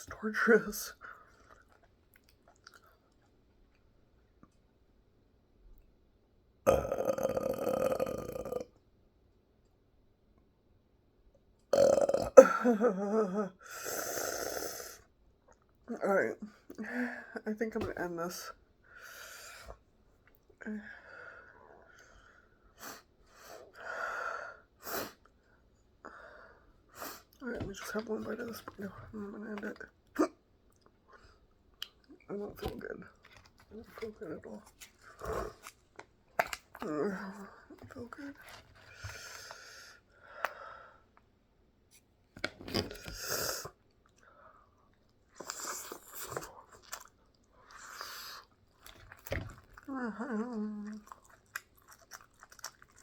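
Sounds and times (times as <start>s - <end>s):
chewing and mouth noises: 1.3s - 4.6s, 33.2s - 37.0s, 44.8s - 53.0s.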